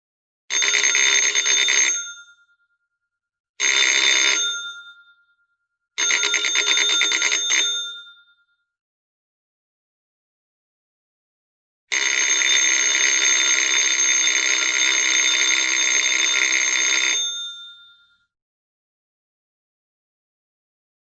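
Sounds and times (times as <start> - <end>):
electric bell ringing: 12.0 - 18.2.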